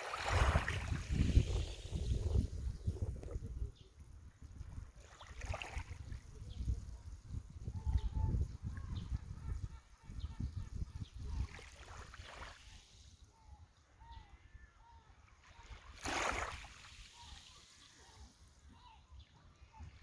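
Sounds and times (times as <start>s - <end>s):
small wave splash: 0.0s - 2.1s, 15.5s - 18.0s
water lapping at shore: 0.0s - 2.6s, 4.6s - 6.3s, 11.0s - 13.4s, 15.1s - 20.0s
faint seagull calls: 13.3s - 15.8s.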